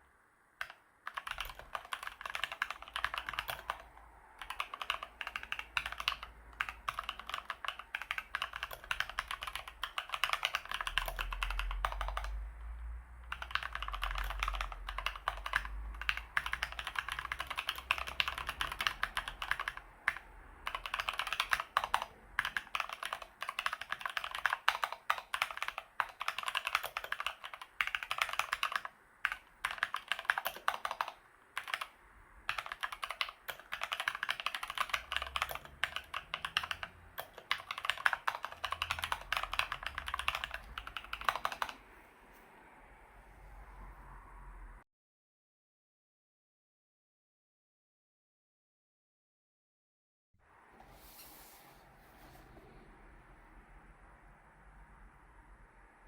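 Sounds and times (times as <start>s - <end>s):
mechanical keyboard typing: 0.6s - 41.8s.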